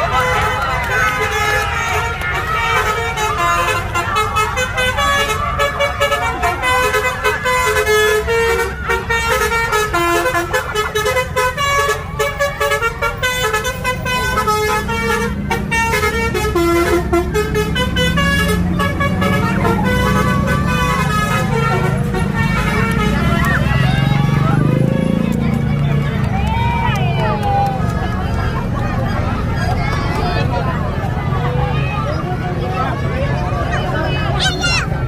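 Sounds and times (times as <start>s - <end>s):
multi-tone bus horn tune: 0.0s - 26.3s
bus engine rumble: 0.0s - 35.0s.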